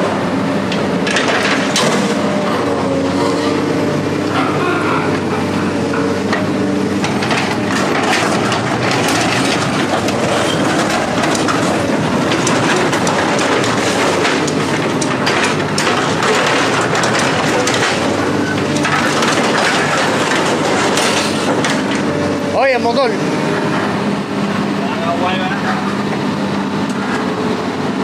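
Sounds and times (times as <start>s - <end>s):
metal rattling and clanking: 0.6s - 4.6s, 5.2s - 23.0s.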